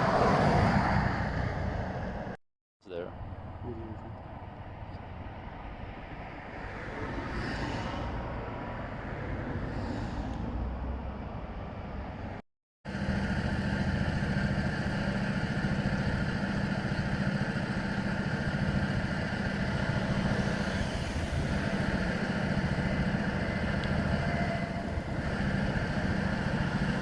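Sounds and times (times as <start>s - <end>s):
vehicle engine idling: 12.9s - 27.0s.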